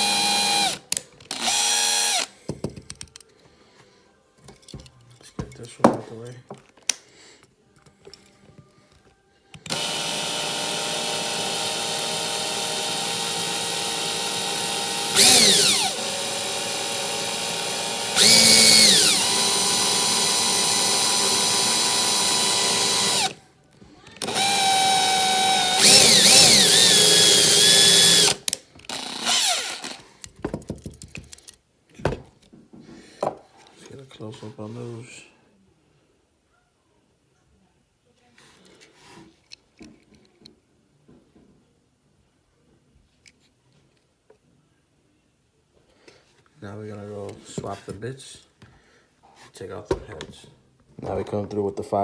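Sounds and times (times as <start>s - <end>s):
electric drill whining: 0.0s - 2.3s, 9.6s - 23.4s, 24.2s - 30.0s.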